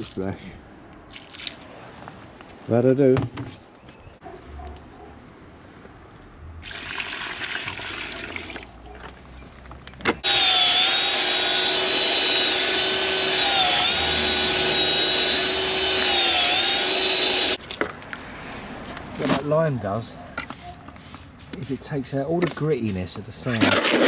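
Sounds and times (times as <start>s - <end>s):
electric mixer motor whining: 10.2s - 17.6s.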